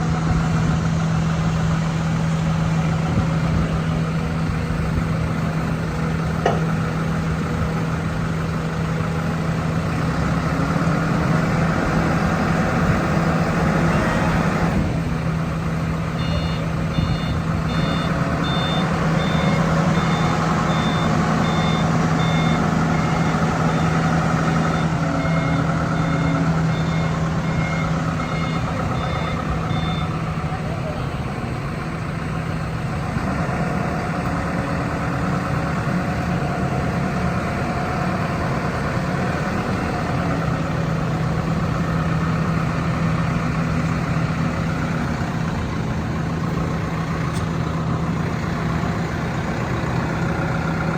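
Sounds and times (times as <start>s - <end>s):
forklift engine running: 0.0s - 50.9s
reversing alarm beeps: 16.2s - 31.2s.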